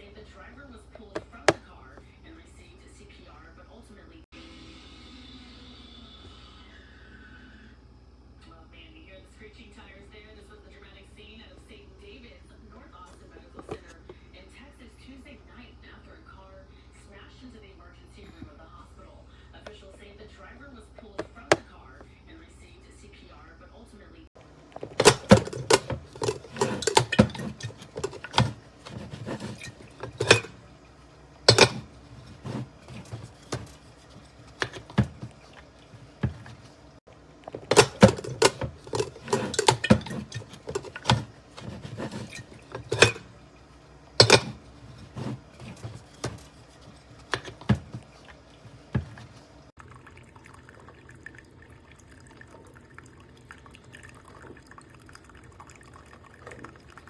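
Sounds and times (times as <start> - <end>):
kitchenware knocking and clinking: 24.8 - 30.7, 31.5 - 36.8, 37.5 - 43.4, 44.2 - 49.4
water trickling: 47.8 - 57.0.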